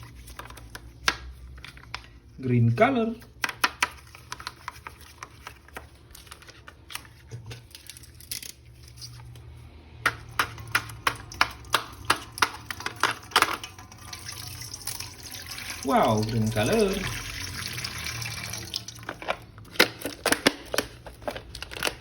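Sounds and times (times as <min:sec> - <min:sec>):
hard plastic clicks and taps: 0:03.3 - 0:04.5.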